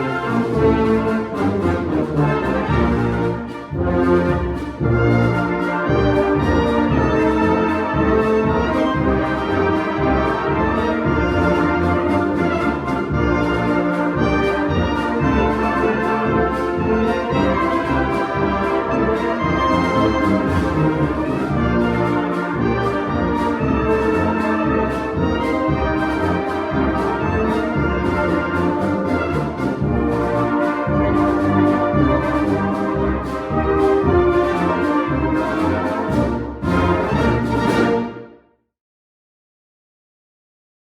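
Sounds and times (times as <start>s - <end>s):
orchestral music with brass: 0.0s - 38.5s.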